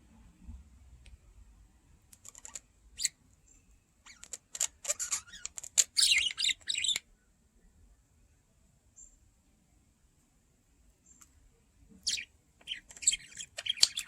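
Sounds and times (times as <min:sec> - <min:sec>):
budgerigars chirping and chattering: 0:02.2 - 0:03.2, 0:04.1 - 0:07.0, 0:12.0 - 0:14.0.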